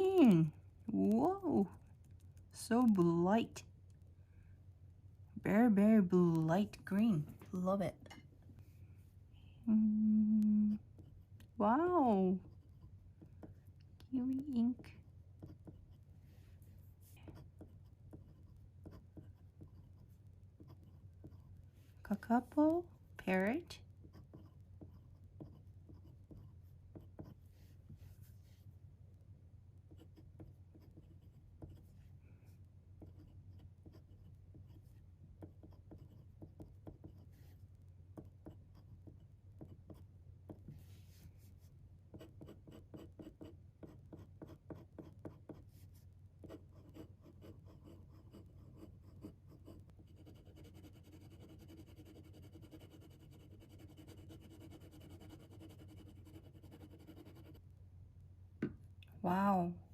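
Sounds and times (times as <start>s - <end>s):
faint steady whine: 0.0s - 59.9s
steady low hum: 0.0s - 59.9s
pen scratching on paper: 17.2s - 21.5s, 24.0s - 27.4s, 29.9s - 32.0s, 33.0s - 37.5s, 42.1s - 45.8s, 46.4s - 57.6s.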